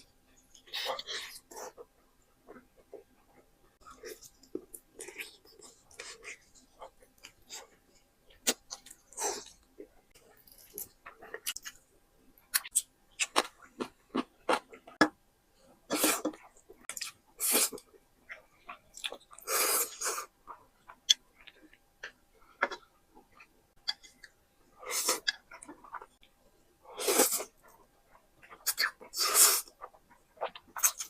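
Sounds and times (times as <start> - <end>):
chewing with wet clicks: 4.0 - 15.1, 17.8 - 19.5, 20.4 - 24.4.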